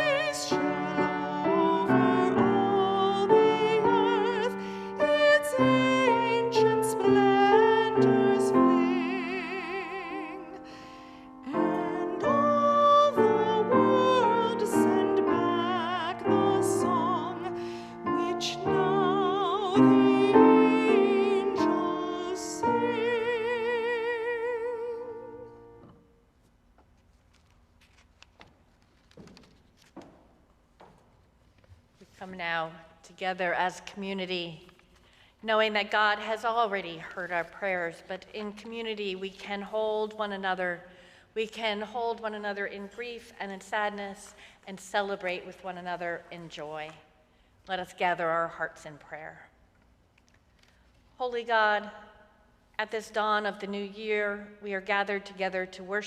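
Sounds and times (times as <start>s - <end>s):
person singing classical style: 0.0s - 25.9s
piano accompaniment: 0.0s - 25.9s.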